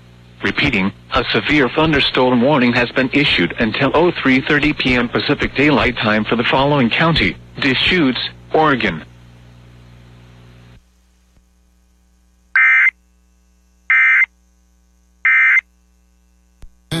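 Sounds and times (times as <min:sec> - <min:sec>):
buzzing digital data tones: 0:12.6 - 0:13.0, 0:13.9 - 0:14.3, 0:15.2 - 0:15.7.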